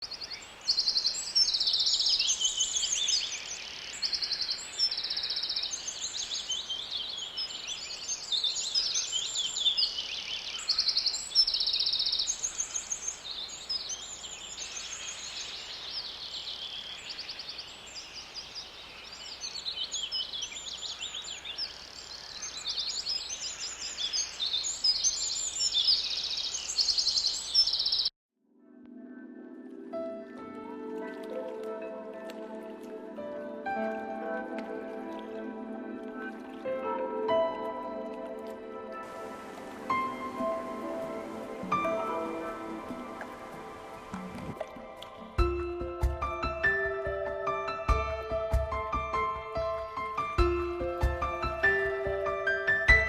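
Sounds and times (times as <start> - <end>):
birds chirping and trilling: 0.0 - 28.1, 39.0 - 45.6.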